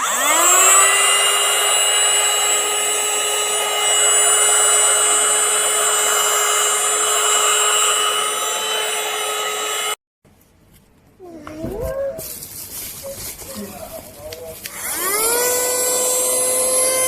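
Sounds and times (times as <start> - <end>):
handheld vacuum cleaner whine: 0.0 - 10.0, 14.6 - 17.0.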